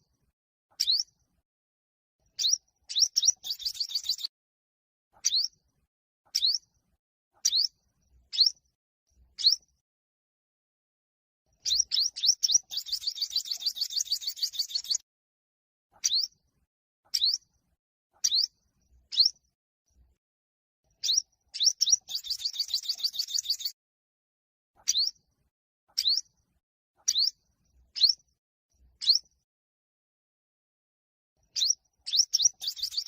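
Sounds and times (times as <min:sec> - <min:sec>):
bird trill: 0:00.7 - 0:01.2, 0:02.3 - 0:04.3, 0:05.2 - 0:05.6, 0:06.3 - 0:06.7, 0:07.4 - 0:08.7, 0:09.4 - 0:09.8, 0:11.6 - 0:15.0, 0:15.9 - 0:16.4, 0:17.1 - 0:17.5, 0:18.2 - 0:19.4, 0:20.9 - 0:23.8, 0:24.8 - 0:25.3, 0:25.9 - 0:26.4, 0:27.0 - 0:28.3, 0:29.0 - 0:29.4, 0:31.4 - 0:33.0
bird chips: 0:02.4 - 0:04.3, 0:11.6 - 0:15.0, 0:21.0 - 0:23.7, 0:31.6 - 0:33.0
sunbird singing: 0:02.4 - 0:04.3, 0:05.2 - 0:05.5, 0:09.4 - 0:09.6, 0:11.6 - 0:15.0, 0:18.2 - 0:18.5, 0:19.1 - 0:19.4, 0:21.0 - 0:23.8, 0:24.8 - 0:25.1, 0:26.0 - 0:26.2, 0:27.1 - 0:27.4, 0:28.0 - 0:28.2, 0:29.0 - 0:29.3, 0:31.5 - 0:33.0.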